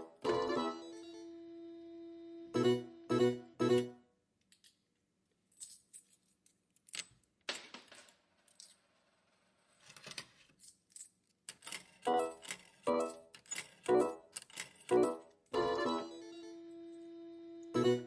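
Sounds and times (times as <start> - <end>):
slot machine chiming: 0.0 - 1.3, 2.6 - 4.0, 12.1 - 13.2, 13.9 - 14.2, 14.9 - 17.0, 17.8 - 18.0
metallic clicks and clinks: 10.0 - 15.2.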